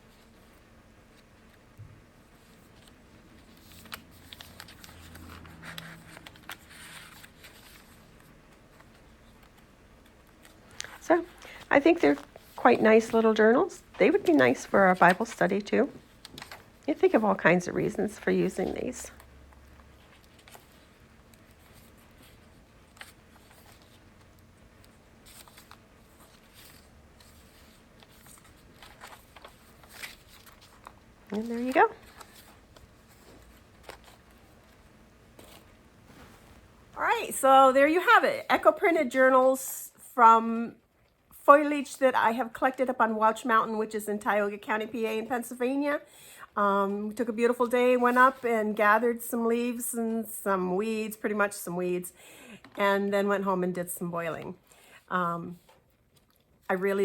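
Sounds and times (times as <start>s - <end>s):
paper pages rustling: 0.1s - 36.7s.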